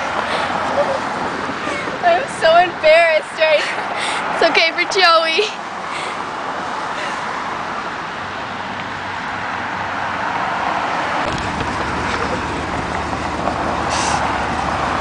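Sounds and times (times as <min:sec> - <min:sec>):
cars going by: 0:00.0 - 0:15.0
low engine rumble: 0:11.2 - 0:15.0.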